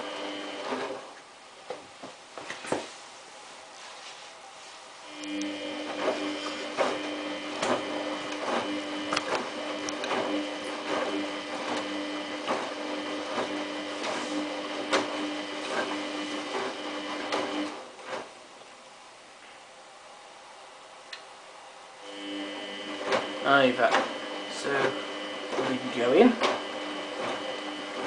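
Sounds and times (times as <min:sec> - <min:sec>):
washing machine motor whine: 0:00.0 - 0:01.8, 0:05.0 - 0:18.4, 0:22.0 - 0:28.0.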